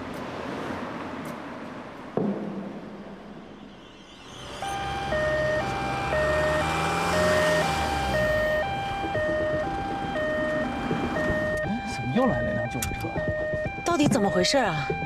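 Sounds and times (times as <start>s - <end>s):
ambulance two-tone siren: 4.2s - 15.0s.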